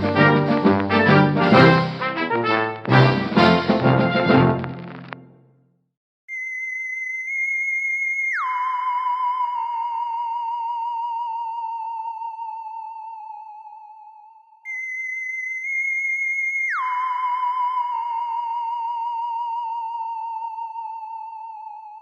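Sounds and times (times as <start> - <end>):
falling electronic tone: 6.3 - 14.1.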